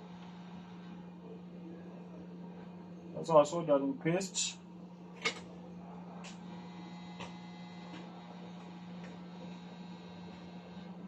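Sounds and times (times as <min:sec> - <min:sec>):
electrical hum: 0:00.0 - 0:11.0.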